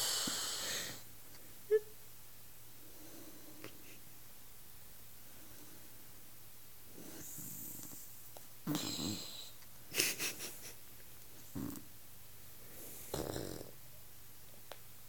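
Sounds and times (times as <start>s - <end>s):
woman snoring: 8.7s - 9.5s, 13.0s - 13.8s.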